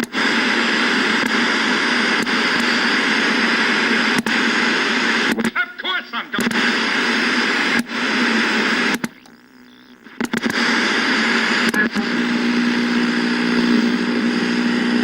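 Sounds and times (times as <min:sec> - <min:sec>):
television static hiss: 0:00.0 - 0:15.0
steady low buzz: 0:06.7 - 0:15.0.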